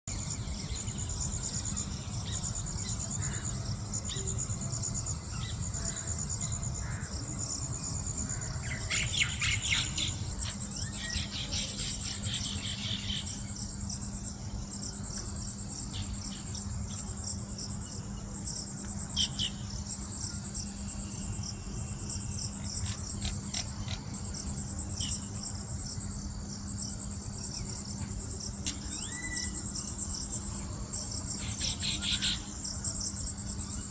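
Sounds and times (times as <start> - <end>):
crickets trilling: 0.1 - 33.9
steady low hum: 0.1 - 33.9
bird chirps: 28.6 - 29.9.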